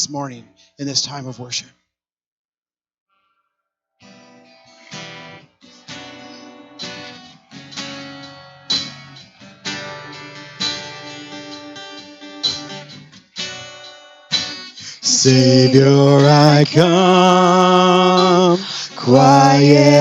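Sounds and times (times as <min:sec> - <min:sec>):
acoustic guitar strumming chords: 0:04.0 - 0:20.0.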